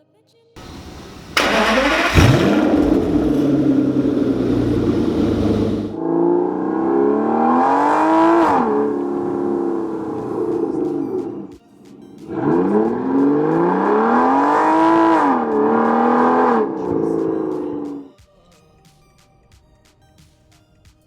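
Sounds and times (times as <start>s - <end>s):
car engine revving: 0.6s - 11.5s, 12.3s - 18.0s.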